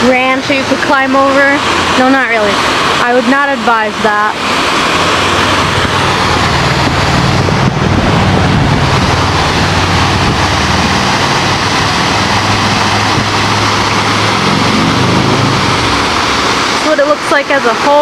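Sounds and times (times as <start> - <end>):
water rushing over a dam: 0.0 - 18.0
low rumble: 4.4 - 17.3.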